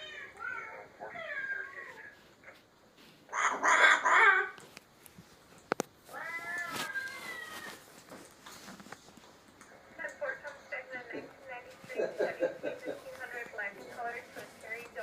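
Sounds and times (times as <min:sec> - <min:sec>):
cat meowing: 0:06.1 - 0:07.8.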